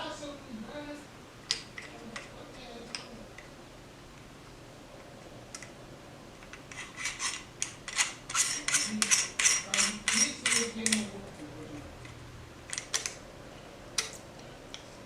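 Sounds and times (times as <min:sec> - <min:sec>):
metal parts scraping by hand: 0:06.4 - 0:11.1.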